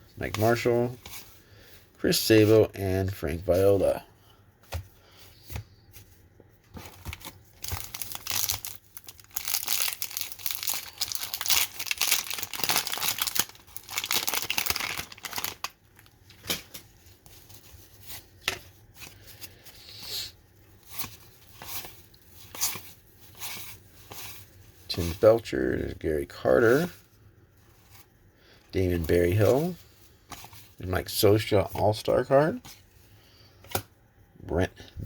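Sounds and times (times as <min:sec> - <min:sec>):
cards rustling and clicking: 0:06.7 - 0:19.6
wax paper wrapper tearing: 0:07.6 - 0:16.1.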